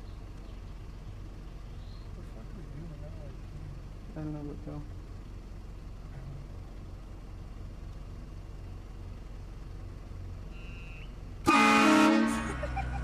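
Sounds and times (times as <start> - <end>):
low vehicle hum: 0.0 - 13.0
train horn blast: 10.6 - 12.7.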